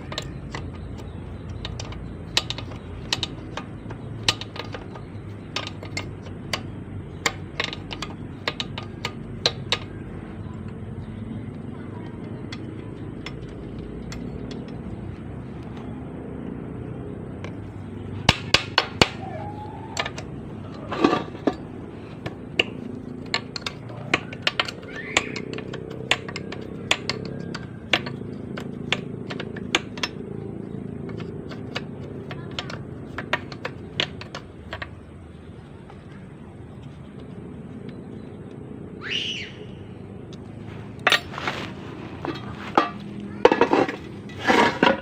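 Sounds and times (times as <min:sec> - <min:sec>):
hand tools clicking on steel: 0:00.0 - 0:15.9, 0:17.5 - 0:36.1
low background noise: 0:00.0 - 0:45.0.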